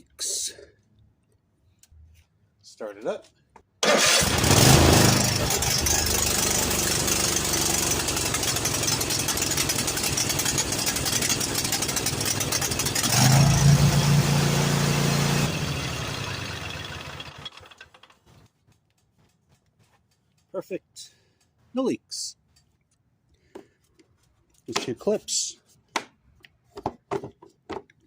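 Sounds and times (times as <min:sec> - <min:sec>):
lawn tractor engine running: 0:03.8 - 0:18.4.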